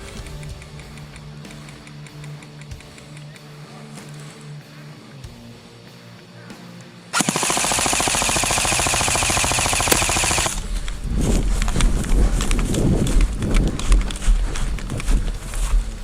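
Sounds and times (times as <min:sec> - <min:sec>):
airsoft rifle full-auto burst: 0:07.2 - 0:10.7.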